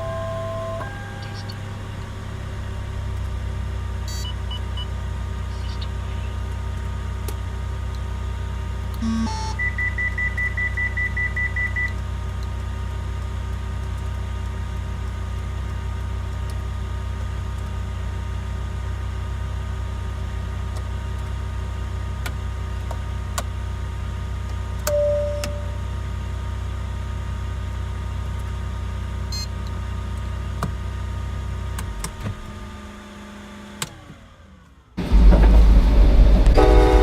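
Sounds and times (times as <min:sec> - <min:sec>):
short beep: 0:00.0 - 0:01.8, 0:04.1 - 0:04.9, 0:09.0 - 0:11.9, 0:24.9 - 0:25.8
low motor hum: 0:00.0 - 0:37.0.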